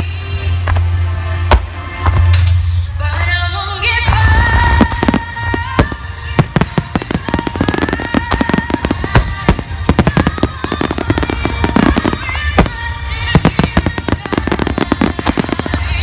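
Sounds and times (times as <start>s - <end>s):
music with long held notes: 0.0s - 16.0s
fireworks cracking and banging: 4.1s - 16.0s.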